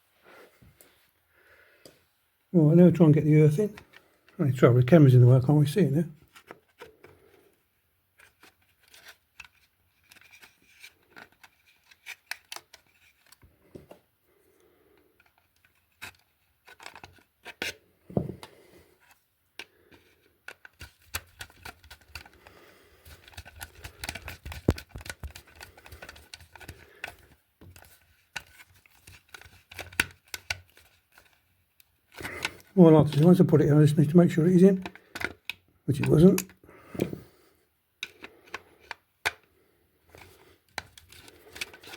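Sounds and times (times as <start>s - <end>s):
scraping and clicking of wire: 23.1s - 31.4s.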